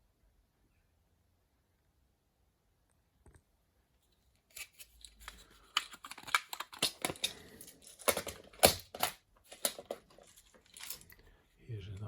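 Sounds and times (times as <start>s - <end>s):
small boxes clicking and rustling: 4.4s - 11.4s.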